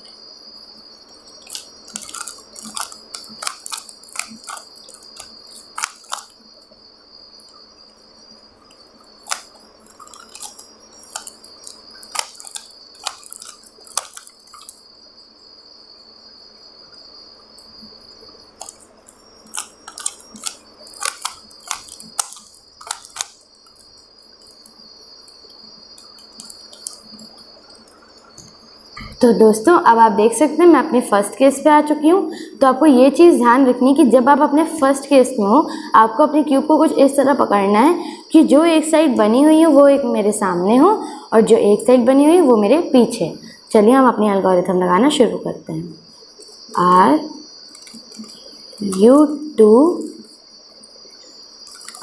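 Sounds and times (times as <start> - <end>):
puzzle cube clicking: 1.4 - 6.4, 9.2 - 14.8, 18.6 - 18.8, 19.5 - 23.4, 26.0 - 27.2, 47.7 - 49.3, 51.7 - 52.0.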